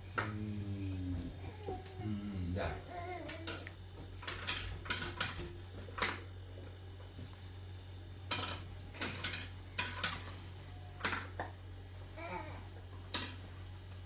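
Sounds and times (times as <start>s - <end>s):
steady low hum: 0.0s - 14.0s
sharp clinks and clatters: 8.1s - 14.0s.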